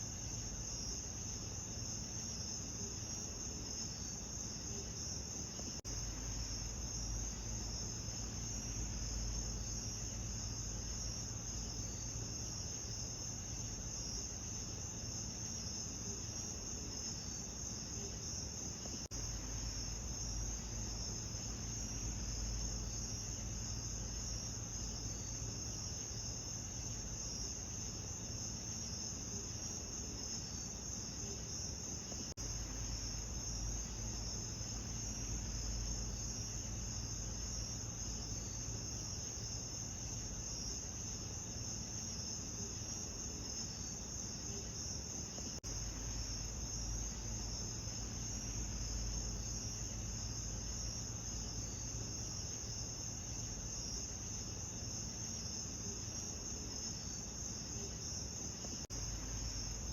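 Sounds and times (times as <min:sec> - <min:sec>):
crickets chirping: 0:00.0 - 0:59.9
faint low rumble: 0:18.8 - 0:25.9, 0:32.0 - 0:40.5.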